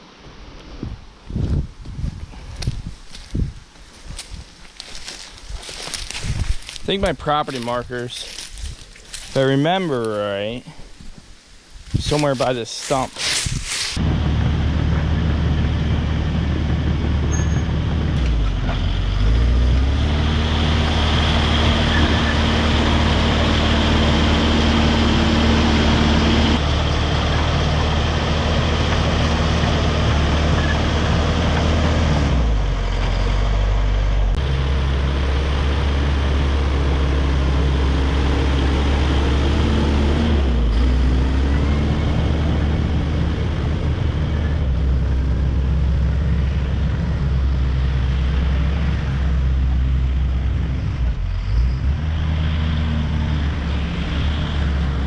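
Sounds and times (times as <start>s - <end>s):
bulldozer diesel engine running: 14.0s - 55.0s.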